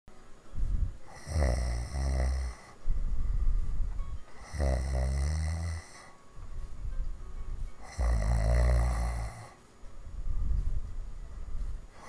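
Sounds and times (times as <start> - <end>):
rough noisy breaths: 0.6 - 6.2, 7.7 - 12.0
woman snoring: 1.0 - 2.8, 4.3 - 6.2, 7.8 - 9.6.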